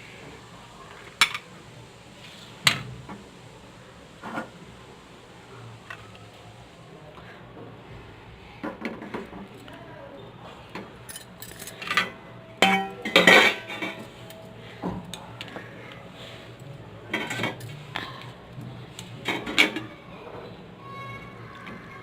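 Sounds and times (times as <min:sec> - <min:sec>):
kitchen utensils clattering: 0:11.1 - 0:14.0.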